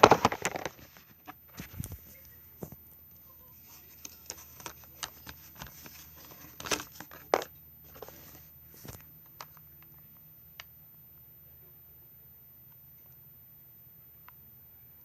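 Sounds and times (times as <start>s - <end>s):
packaging crinkling and rustling: 0.0s - 2.0s, 3.9s - 9.5s.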